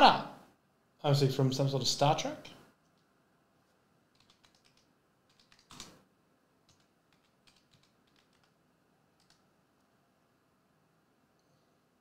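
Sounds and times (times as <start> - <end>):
keyboard typing: 4.1 - 9.5.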